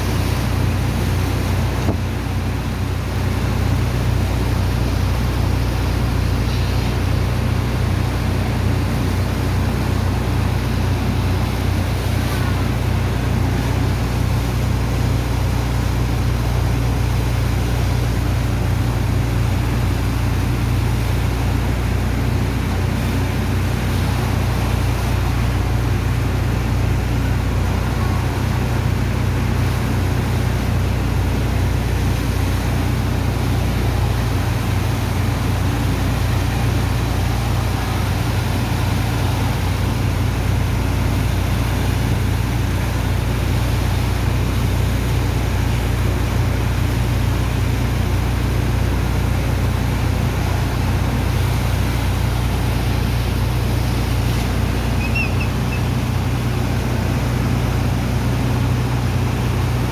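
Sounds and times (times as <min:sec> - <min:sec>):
pump engine deep hum: 0:00.0 - 0:59.9
rushing noise: 0:19.7 - 0:59.9.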